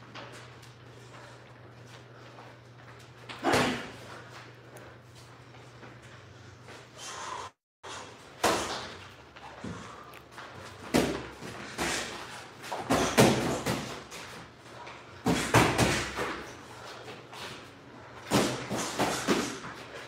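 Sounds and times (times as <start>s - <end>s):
boxing gloves punching: 10.8s - 14.1s, 18.2s - 19.7s.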